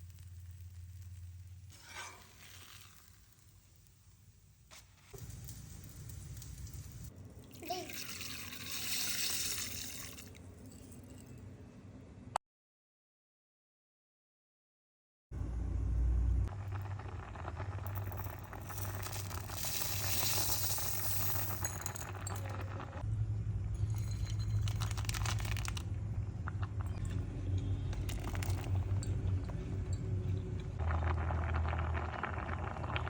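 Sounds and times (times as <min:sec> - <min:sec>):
low hum: 0:15.4 - 0:19.6, 0:21.2 - 0:33.0
utensils and dishes clinking: 0:18.8 - 0:22.9.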